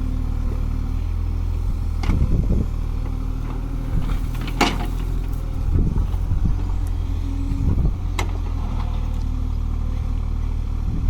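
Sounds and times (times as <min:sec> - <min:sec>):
mini excavator diesel engine: 0:00.0 - 0:11.0.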